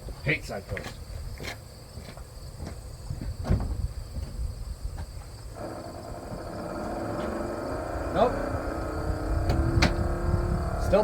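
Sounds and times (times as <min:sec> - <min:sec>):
washer pump whining: 0:05.6 - 0:11.0.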